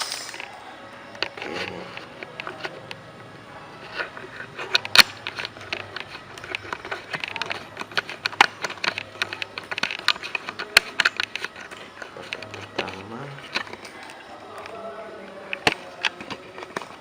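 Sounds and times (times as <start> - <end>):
small objects clicking and knocking: 0.0 - 0.6, 3.8 - 14.8, 15.5 - 17.0.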